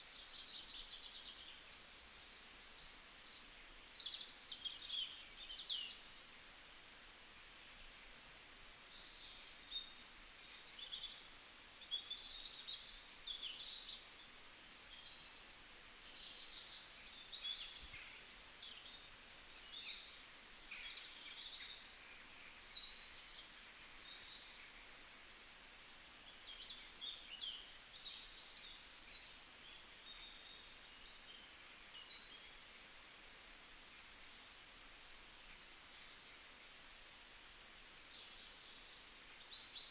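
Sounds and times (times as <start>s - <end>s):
faint steady hiss: 0.0s - 39.9s
small birds chirping and trilling: 26.3s - 39.9s.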